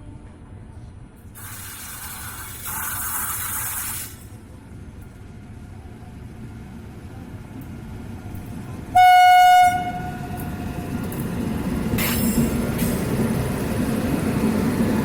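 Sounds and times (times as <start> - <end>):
train rumbling: 0.0 - 15.0
loud hiss: 1.3 - 4.3.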